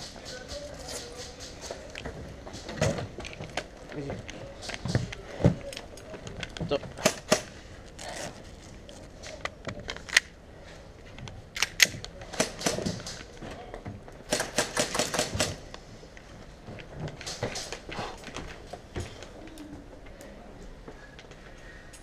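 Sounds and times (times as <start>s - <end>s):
airsoft guns firing: 7.0s - 7.6s, 11.7s - 13.3s, 14.3s - 15.6s.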